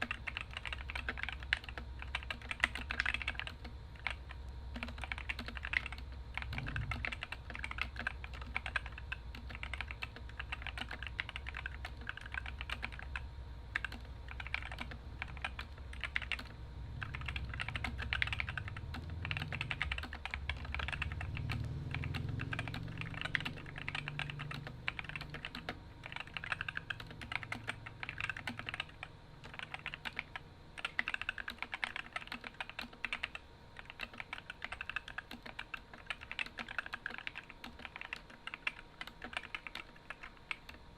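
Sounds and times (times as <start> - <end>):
fast typing key clacks: 0.0 - 40.8
low hum: 3.8 - 29.9.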